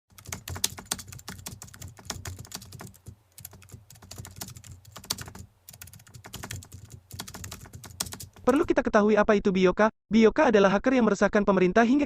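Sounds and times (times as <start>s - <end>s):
fast keyboard typing: 0.1s - 8.7s.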